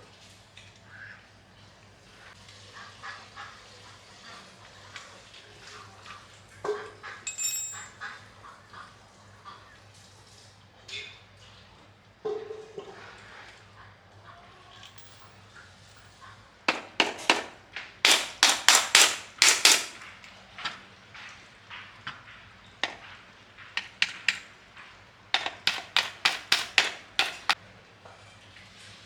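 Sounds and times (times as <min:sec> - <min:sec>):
hammer striking metal: 0:16.7 - 0:20.1, 0:22.8 - 0:24.5, 0:25.4 - 0:27.6.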